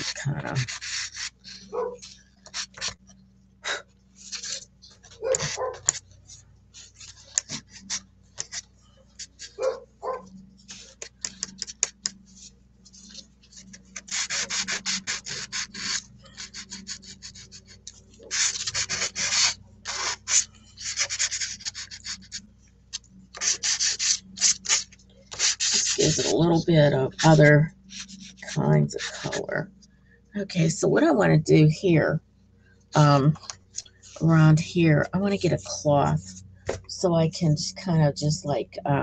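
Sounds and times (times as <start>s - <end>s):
pastel scratching on paper: 0.0s - 3.0s, 4.2s - 4.6s, 5.2s - 9.8s, 10.6s - 22.4s, 23.4s - 29.5s
faint steady hum: 0.0s - 39.0s.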